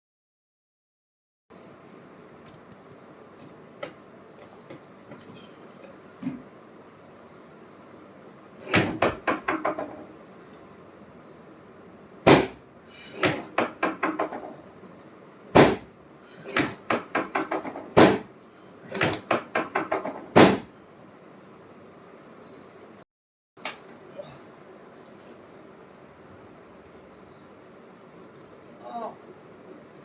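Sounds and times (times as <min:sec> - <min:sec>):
chiropractic adjusting clicks and knocks: 0:08.6 - 0:10.1, 0:13.2 - 0:14.6, 0:16.5 - 0:18.3, 0:18.9 - 0:20.7.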